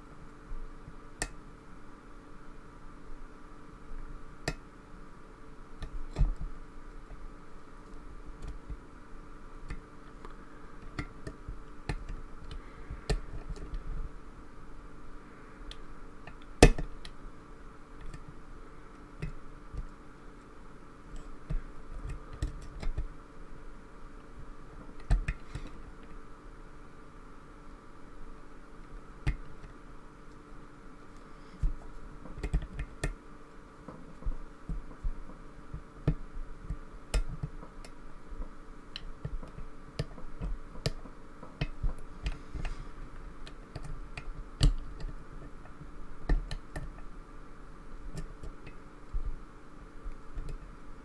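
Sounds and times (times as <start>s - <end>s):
faint steady hum: 0.0s - 51.0s.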